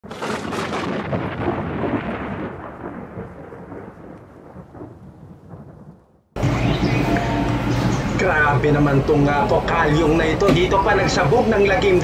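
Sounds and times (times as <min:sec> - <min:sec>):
loud crash with crackling: 0:00.0 - 0:05.0.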